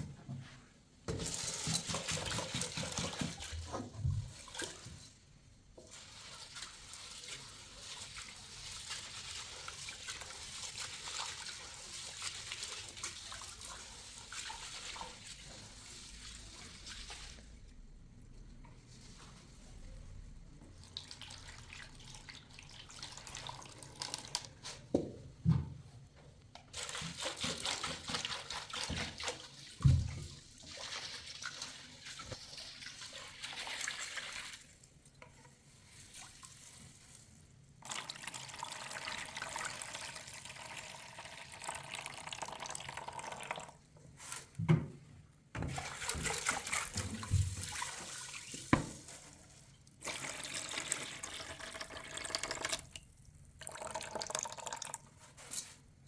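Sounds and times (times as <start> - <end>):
tap water running: 37.8 - 43.8, 45.6 - 49.2, 49.9 - 53.0, 53.6 - 55.0.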